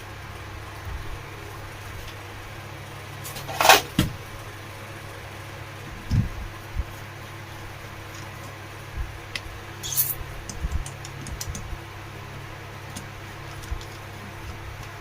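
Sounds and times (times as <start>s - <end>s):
steady low hum: 0.0s - 15.0s
small clicks and taps: 10.5s - 11.7s.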